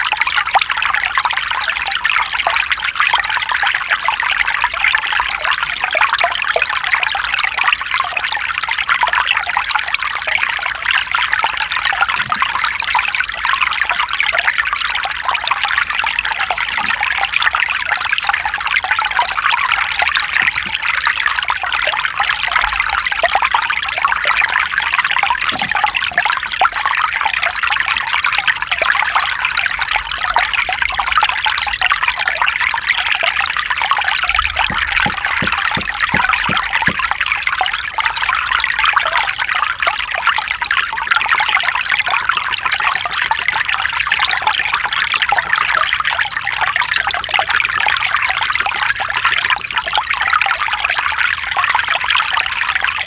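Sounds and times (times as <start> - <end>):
stream running over rocks: 10.4 - 29.1, 33.0 - 37.8.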